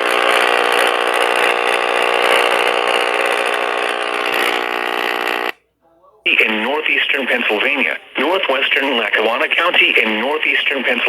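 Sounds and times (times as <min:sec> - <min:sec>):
buzzing emergency alert tone: 0:00.0 - 0:05.6.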